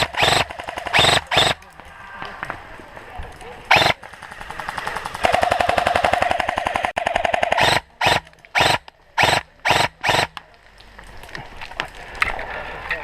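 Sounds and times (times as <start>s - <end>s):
airsoft rifle firing bursts: 0.0s - 1.7s, 3.7s - 10.4s.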